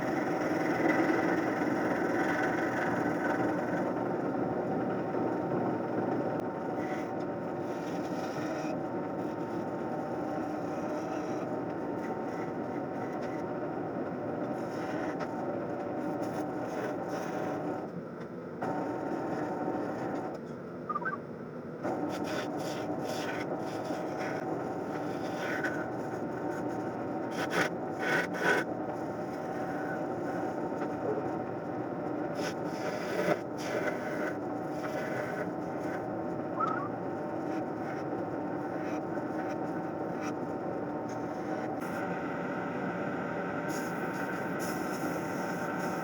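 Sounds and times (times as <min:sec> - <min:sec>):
wood lathe running: 0:00.0 - 0:04.8.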